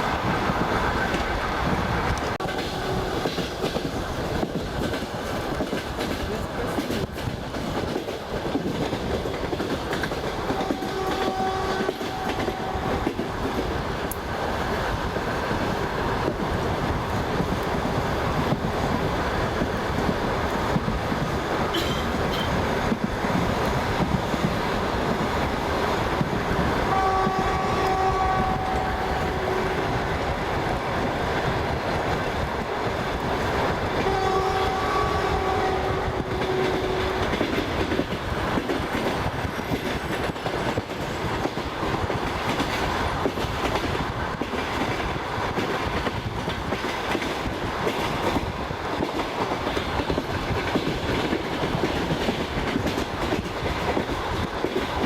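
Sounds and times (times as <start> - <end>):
train rumbling: 0.0 - 55.0
train horn blasts: 10.5 - 13.2, 21.7 - 22.6, 26.9 - 30.0, 34.0 - 37.5.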